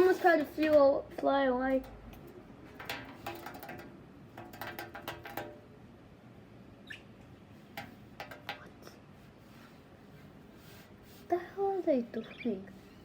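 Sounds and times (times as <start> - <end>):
parrot chirp: 6.8 - 7.1, 12.2 - 12.6.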